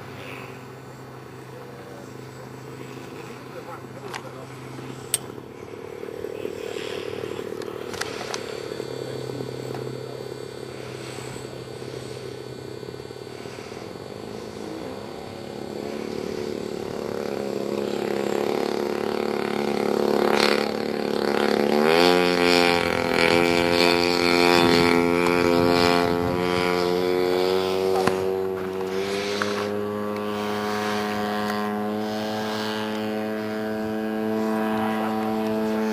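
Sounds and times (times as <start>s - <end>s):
model airplane engine running: 0.0s - 35.9s.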